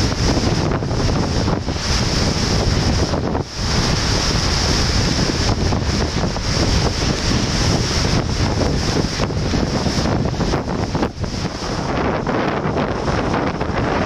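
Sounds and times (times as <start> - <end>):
storm waves breaking: 0.0 - 14.0
strong wind buffeting microphone: 0.0 - 14.0.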